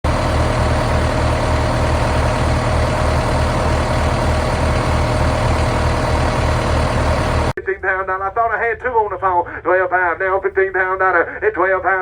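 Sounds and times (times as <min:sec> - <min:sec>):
tractor diesel engine idling: 0:00.0 - 0:07.6.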